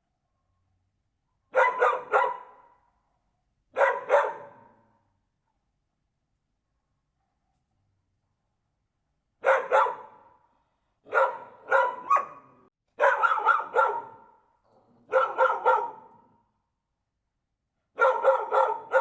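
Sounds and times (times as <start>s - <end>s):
dog barking: 1.5s - 2.9s, 3.7s - 5.0s, 9.4s - 16.5s, 17.9s - 19.0s.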